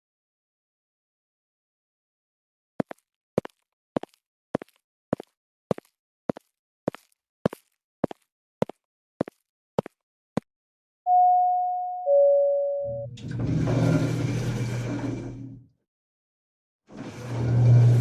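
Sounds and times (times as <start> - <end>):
two-note electronic chime: 11.1 - 13.1.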